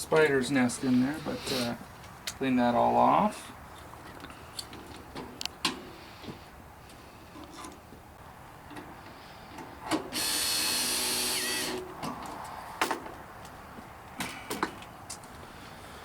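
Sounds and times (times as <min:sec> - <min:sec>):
power drill running: 0:10.1 - 0:11.8.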